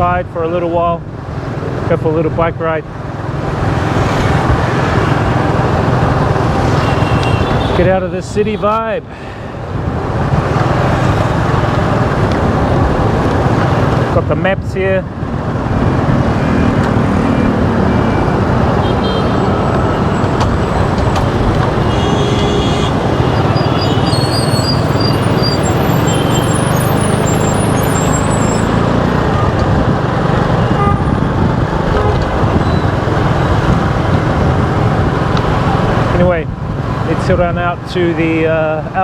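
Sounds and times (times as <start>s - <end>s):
road noise: 0.0s - 39.0s
car horn toots: 6.7s - 7.9s, 16.5s - 28.6s, 30.6s - 31.2s, 31.9s - 32.9s
motorbike engine: 15.2s - 36.1s.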